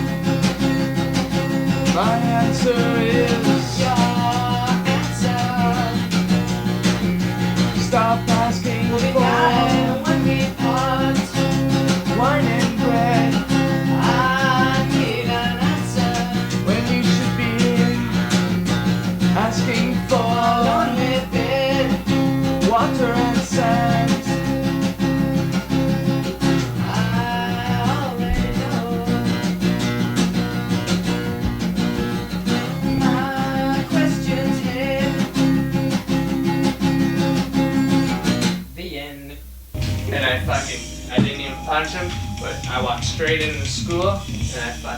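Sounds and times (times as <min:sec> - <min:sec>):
acoustic guitar strumming: 0:00.0 - 0:44.9
wavering melody line: 0:39.8 - 0:43.6.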